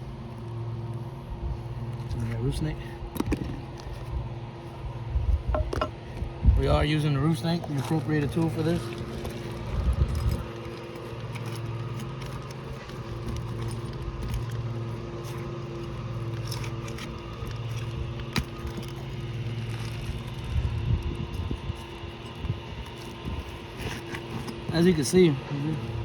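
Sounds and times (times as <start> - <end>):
low motor hum: 0.0 - 26.0
shingle ripper scraping shingles: 7.6 - 25.6.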